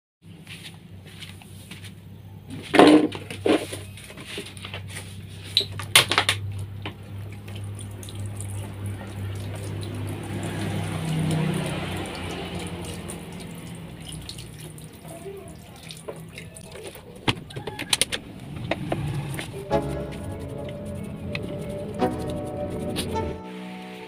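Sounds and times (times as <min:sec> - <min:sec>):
steady rush of water: 0:07.3 - 0:17.5
low steady hum: 0:12.2 - 0:23.4.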